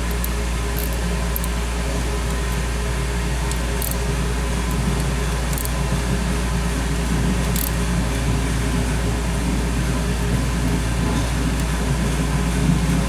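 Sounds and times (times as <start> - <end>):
machine hum with hiss: 0.0 - 13.0
faint high ticks: 3.5 - 4.0.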